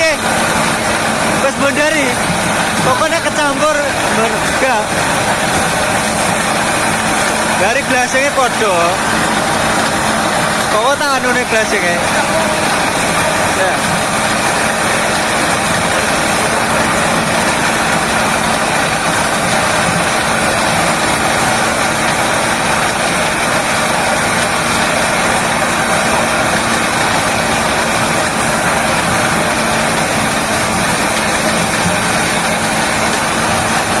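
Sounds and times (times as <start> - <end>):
corn sheller running: 0.0 - 34.0.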